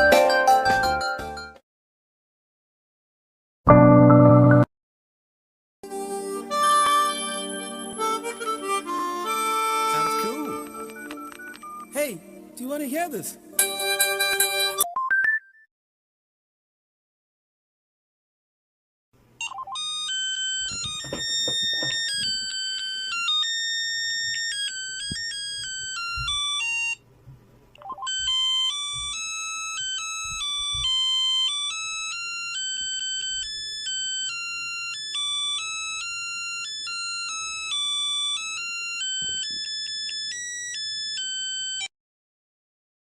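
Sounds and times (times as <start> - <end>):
electronic ringtone melody: 6.5 - 12.4, 13.6 - 15.6, 19.4 - 27.0, 27.8 - 41.9.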